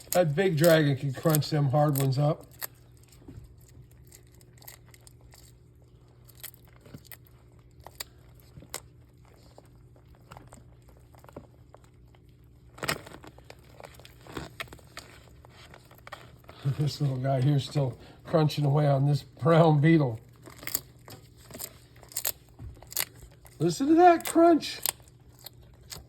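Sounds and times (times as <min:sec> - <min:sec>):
lizard crunching beetle shell: 0:00.0 - 0:26.0.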